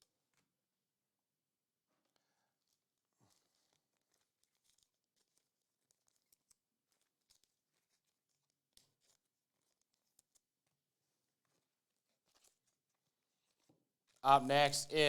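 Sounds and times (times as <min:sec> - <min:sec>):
foil wrapper rustling: 0:02.5 - 0:14.2
trading cards ticking and rustling: 0:02.6 - 0:14.2.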